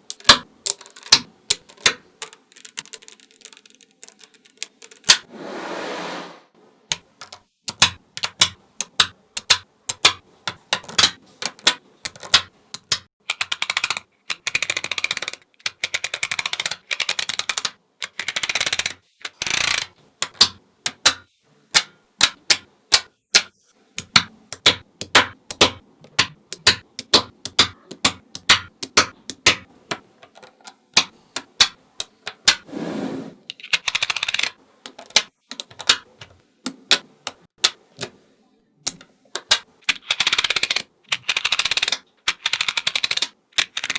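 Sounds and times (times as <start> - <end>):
magnetic balls clicking: 0.0 - 5.3, 6.9 - 32.6, 33.5 - 38.1, 38.8 - 43.9
rapid rattling clicks of balls: 0.0 - 5.3, 39.4 - 43.9.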